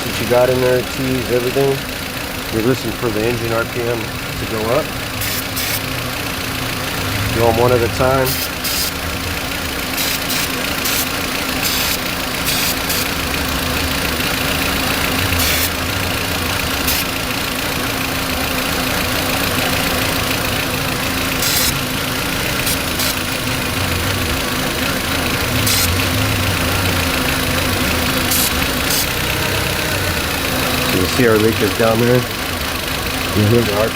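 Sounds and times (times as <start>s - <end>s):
car engine idling roughly: 0.0s - 33.9s
spray can hissing: 5.2s - 5.9s, 8.3s - 9.0s, 10.0s - 13.2s, 16.9s - 17.2s, 21.3s - 21.8s, 22.6s - 23.3s, 28.2s - 29.6s.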